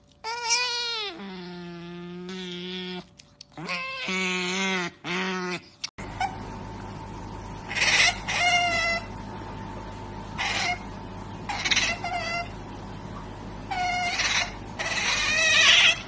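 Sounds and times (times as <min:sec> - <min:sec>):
low background hum: 0:00.0 - 0:16.0
otter squeaks and squeals: 0:00.1 - 0:06.4, 0:11.5 - 0:12.6, 0:13.7 - 0:16.0.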